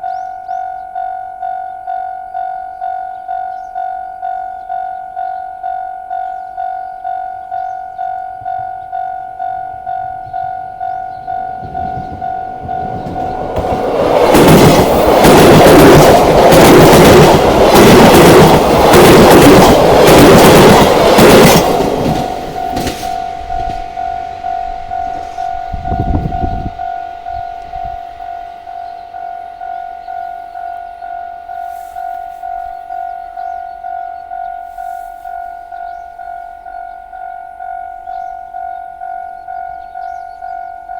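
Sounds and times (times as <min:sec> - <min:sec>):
level-crossing warning bell: 0:00.0 - 0:40.9
train passing at speed: 0:06.6 - 0:40.9
wheels clacking over rail joints: 0:08.5 - 0:26.0.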